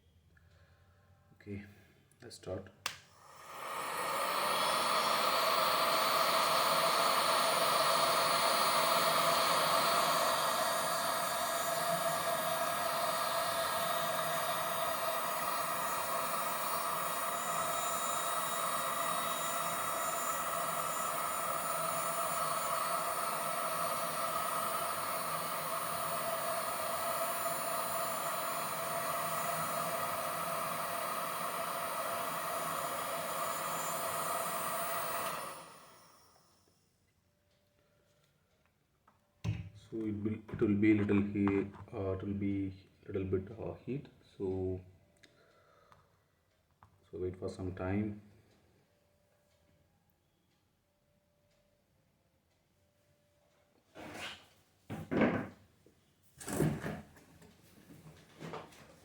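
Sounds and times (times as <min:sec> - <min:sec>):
heat gun blower whine: 0:03.2 - 0:36.5.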